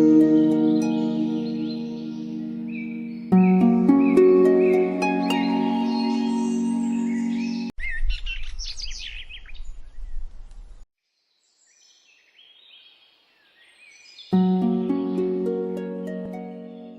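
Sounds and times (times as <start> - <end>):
birds chirping and singing: 0.0 - 10.3, 11.4 - 16.9.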